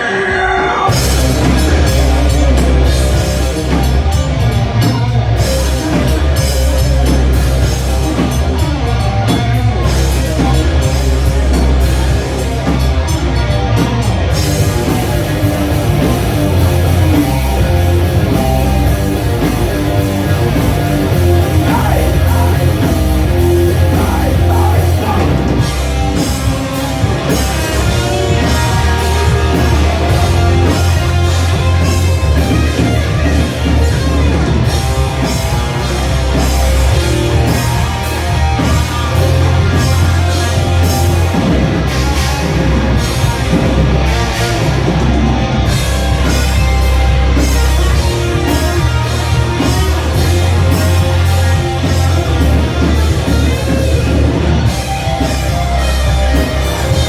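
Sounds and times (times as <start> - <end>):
live rock band playing: 0.0 - 57.0
drum hits: 13.8 - 35.8.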